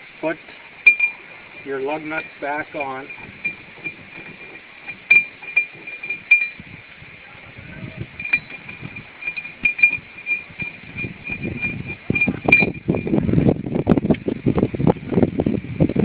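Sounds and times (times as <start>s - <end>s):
metal lug nuts clinking: 0.8s - 6.7s, 8.2s - 13.1s.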